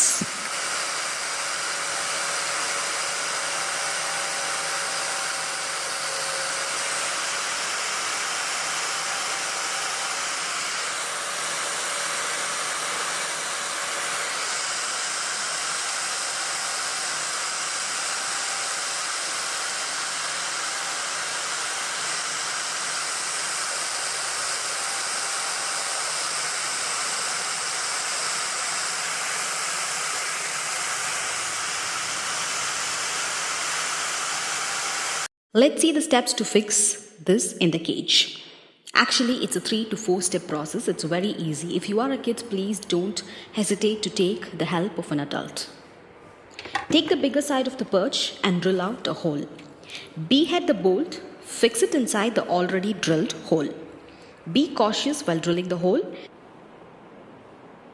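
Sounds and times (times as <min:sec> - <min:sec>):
electric smoothing tool whirring: 0:00.0 - 0:35.3.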